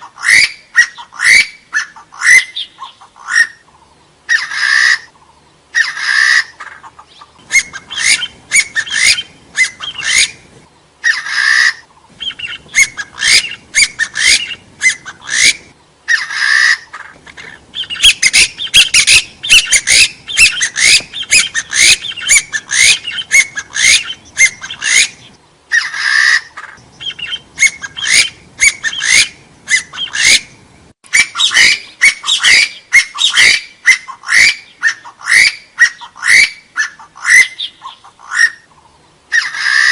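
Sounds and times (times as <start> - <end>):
harsh partridge call: 0.0 - 39.9
partridge whistling calls: 0.0 - 39.9.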